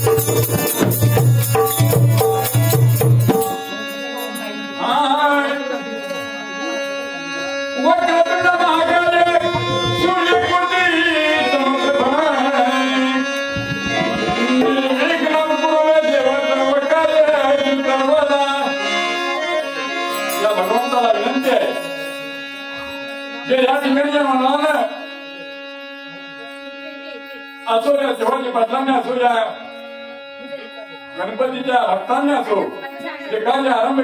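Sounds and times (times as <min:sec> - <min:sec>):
hand drum: 0:00.0 - 0:03.8, 0:13.5 - 0:15.0
harmonium notes: 0:00.0 - 0:34.0.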